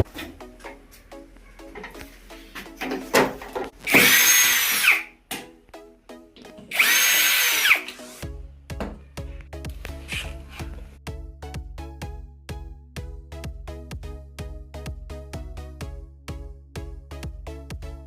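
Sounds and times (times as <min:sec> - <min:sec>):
background music: 0:00.0 - 0:18.0
power drill motor whine: 0:03.8 - 0:05.1, 0:06.7 - 0:08.0.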